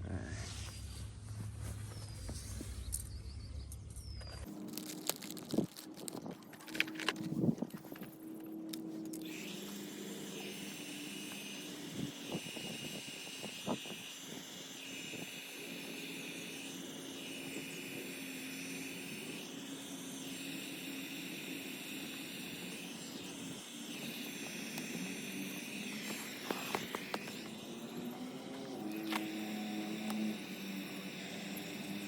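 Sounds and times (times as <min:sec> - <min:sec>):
heat gun whirring: 0:04.0 - 0:32.0.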